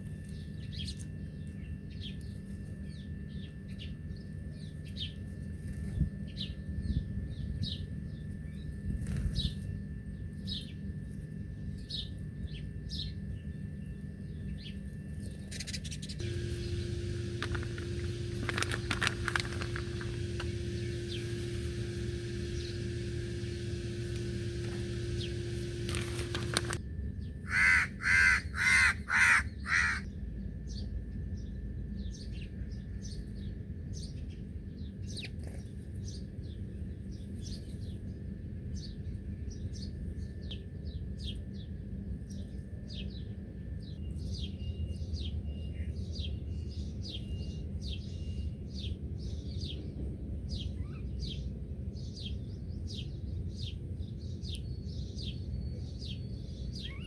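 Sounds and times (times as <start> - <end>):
steady hum: 16.0 - 26.8
crow cawing: 27.5 - 30.0.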